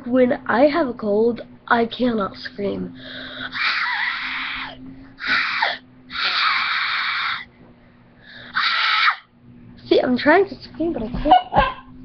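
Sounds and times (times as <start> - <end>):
hoarse breathy screams: 3.0 - 7.5, 8.2 - 9.3.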